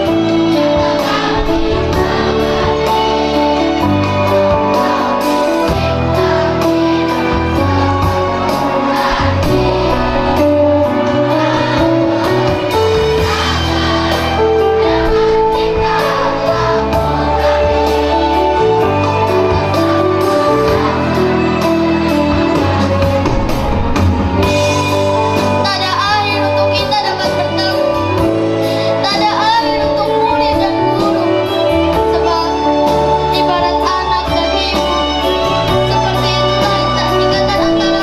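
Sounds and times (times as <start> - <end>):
children's choir singing: 0.0 - 26.2
instrumental accompaniment: 0.0 - 38.0.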